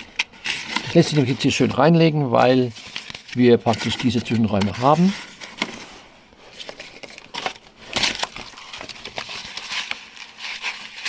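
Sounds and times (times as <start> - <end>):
cardboard crinkling and scraping: 0.0 - 11.0
cardboard crunch: 2.6 - 11.0.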